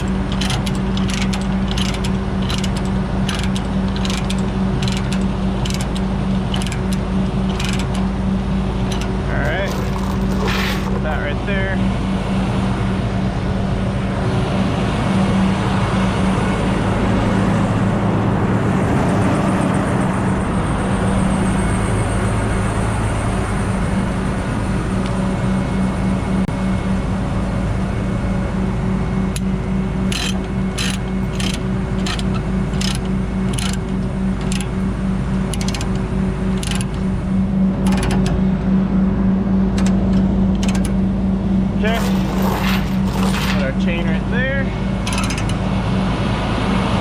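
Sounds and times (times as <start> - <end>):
metallic clicks of chain tie-down: 0.0 - 8.1, 8.8 - 11.0, 30.1 - 36.0, 36.6 - 37.1, 37.8 - 38.4, 39.8 - 41.0, 45.0 - 45.6
diesel truck engine idling: 0.0 - 47.0.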